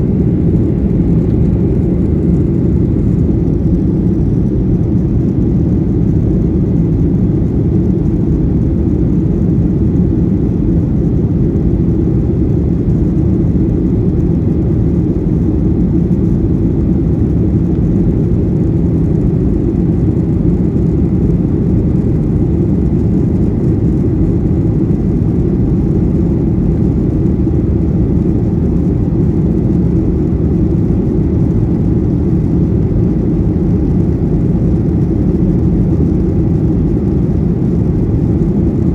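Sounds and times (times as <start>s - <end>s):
faint high whine: 0.0s - 6.3s
airliner cabin engine rumble: 0.0s - 38.9s.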